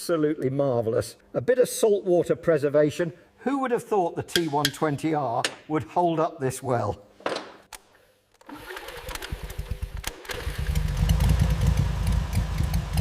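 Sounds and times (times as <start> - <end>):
motorcycle engine starting and running: 8.5 - 13.0.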